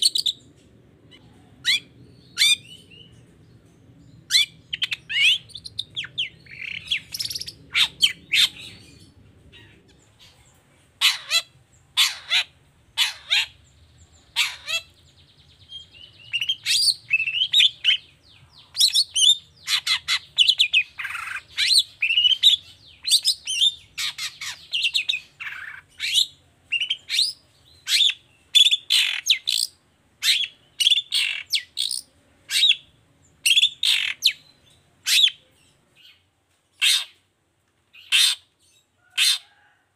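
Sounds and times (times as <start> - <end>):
bird chirping: 0.0 - 39.8.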